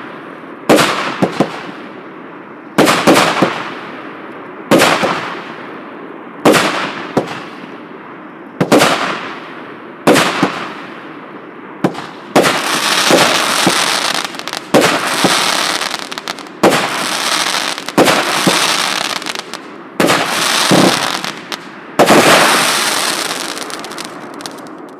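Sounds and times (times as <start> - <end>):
hissing firework tails: 12.4 - 24.9.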